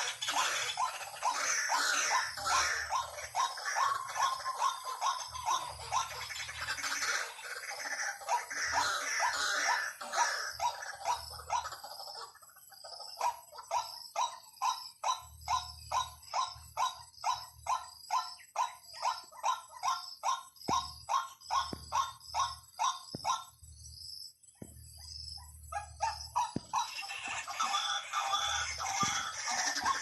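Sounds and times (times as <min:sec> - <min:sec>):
waterhen calls: 0:00.0 - 0:12.2, 0:25.7 - 0:30.0.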